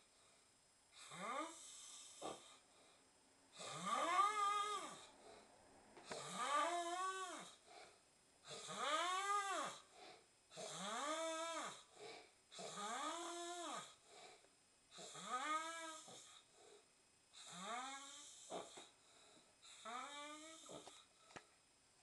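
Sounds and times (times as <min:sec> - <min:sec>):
man snoring with whistling whine: 0:00.9 - 0:02.7, 0:03.5 - 0:05.4, 0:06.0 - 0:07.7, 0:08.4 - 0:14.1, 0:14.9 - 0:19.0, 0:19.6 - 0:21.2.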